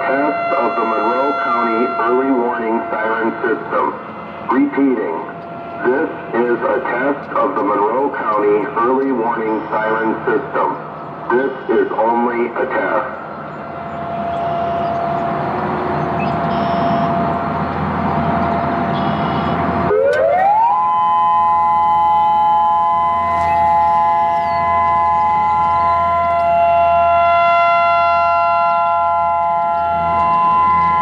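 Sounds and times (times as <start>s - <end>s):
siren steady alert tone chord: 0.0s - 7.9s, 12.8s - 31.0s
electronic siren hiss: 13.6s - 17.6s, 18.9s - 27.4s.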